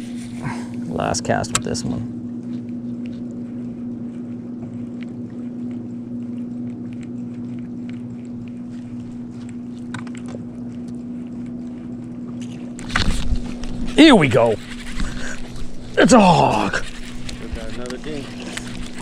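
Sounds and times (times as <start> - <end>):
boat motor humming: 0.0 - 19.0.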